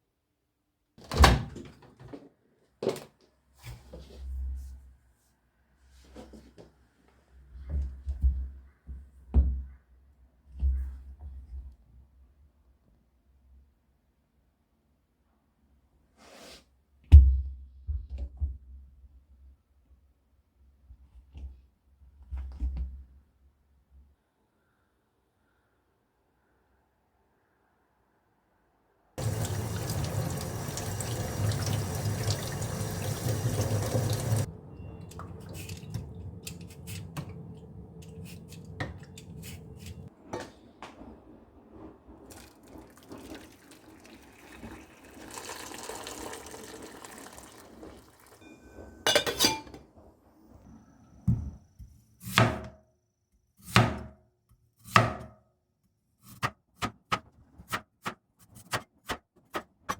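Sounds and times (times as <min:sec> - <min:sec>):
tap water running into sink: 0:29.2 - 0:34.5, 0:42.3 - 0:48.4.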